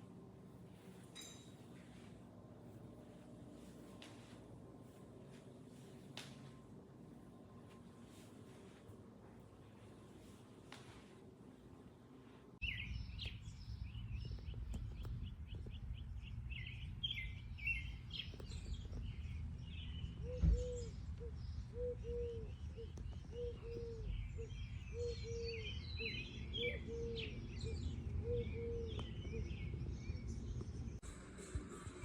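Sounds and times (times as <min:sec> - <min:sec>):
steady low rumble: 0:01.9 - 0:21.8
birds chirping and trilling: 0:12.6 - 0:31.0.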